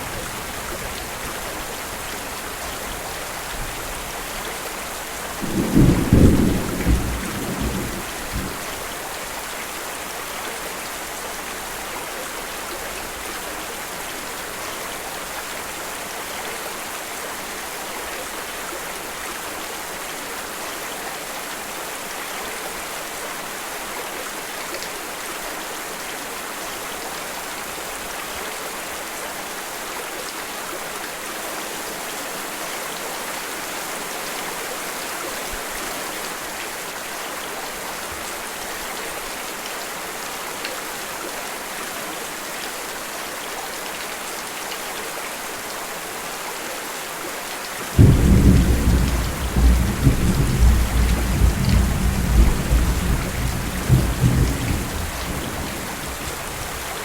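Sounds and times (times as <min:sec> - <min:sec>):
steady rain: 0:00.0 - 0:57.0
flowing water: 0:08.2 - 0:57.0
thunder rumble: 0:48.0 - 0:57.0.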